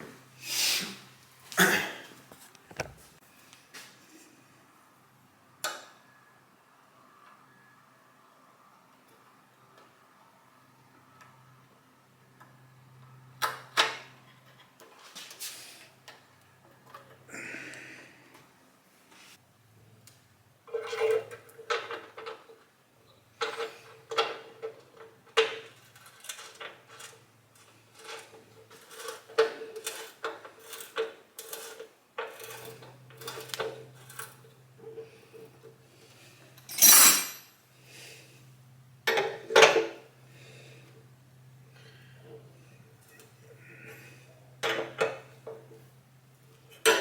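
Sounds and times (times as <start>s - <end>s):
metal tools clinking: 36.6s - 37.5s.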